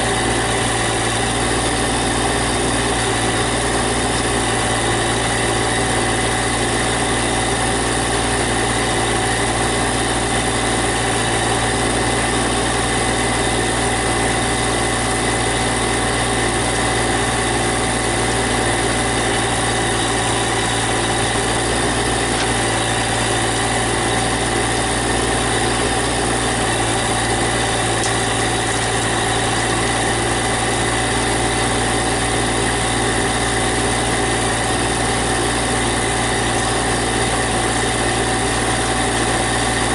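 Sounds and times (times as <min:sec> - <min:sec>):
tractor diesel engine idling: 0:00.0 - 0:39.9.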